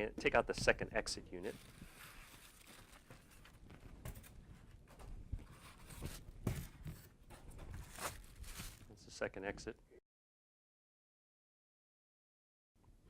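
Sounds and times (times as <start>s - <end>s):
packaging rustling: 1.4s - 4.8s, 5.5s - 8.9s.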